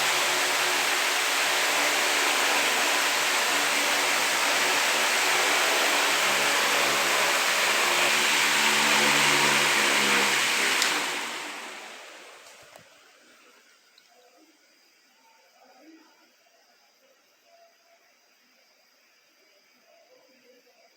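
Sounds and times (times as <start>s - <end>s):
low motor hum: 0.0s - 12.7s
fan rushing air: 0.0s - 13.0s
click: 10.8s - 11.0s.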